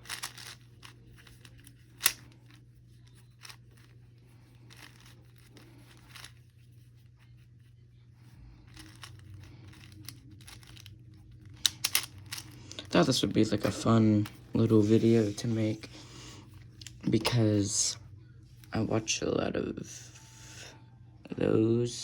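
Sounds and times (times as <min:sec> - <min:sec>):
plastic cube twisting clicks: 0:00.0 - 0:02.6, 0:08.7 - 0:12.6
low hum: 0:00.0 - 0:22.0.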